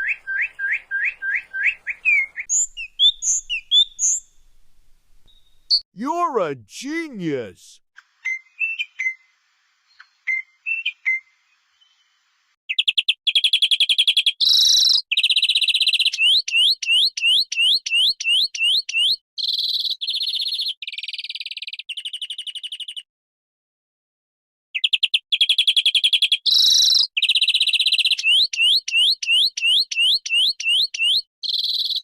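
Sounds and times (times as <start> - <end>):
bird chirps: 0.0 - 4.5.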